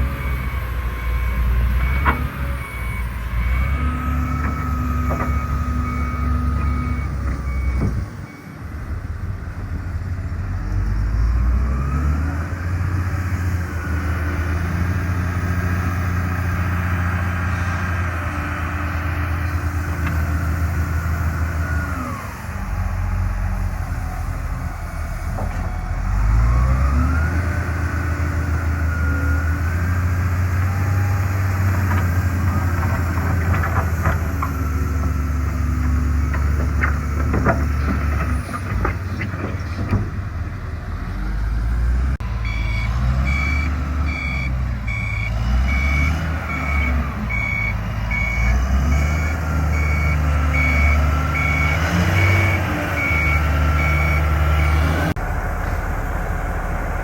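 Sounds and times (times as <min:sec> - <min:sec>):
reversing alarm beeping: 0:00.0 - 0:08.6, 0:42.2 - 0:55.0
diesel engine revving: 0:00.0 - 0:57.0.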